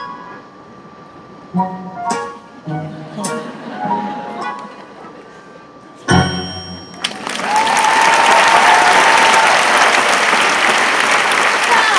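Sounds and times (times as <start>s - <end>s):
crowd whistle: 7.0s - 11.4s
audience applause: 7.0s - 11.9s.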